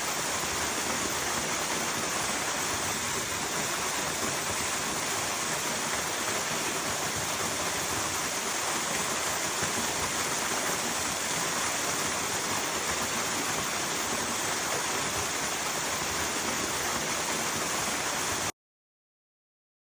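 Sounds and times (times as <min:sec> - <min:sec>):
rushing water: 0:00.0 - 0:18.5.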